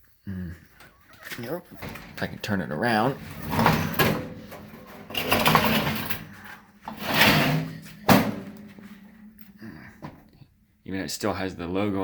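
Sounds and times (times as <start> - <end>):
metal case scraping and rubbing: 3.1 - 9.0.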